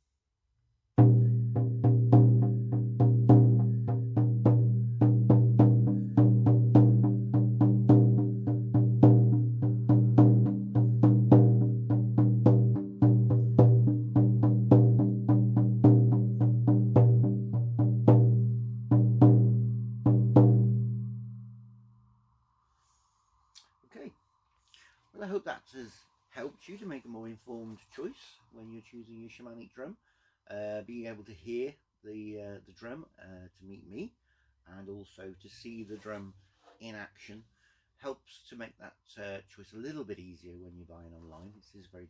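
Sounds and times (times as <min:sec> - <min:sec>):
frame drum booming beat: 0:01.0 - 0:21.4.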